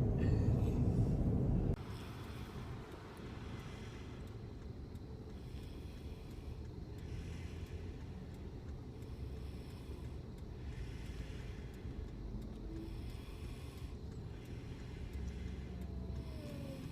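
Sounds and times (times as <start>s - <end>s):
car rumble: 0.0s - 16.9s
person snoring: 16.1s - 16.9s.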